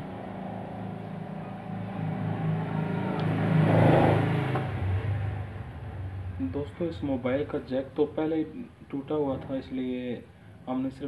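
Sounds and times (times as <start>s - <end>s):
engine hum: 0.0s - 9.6s.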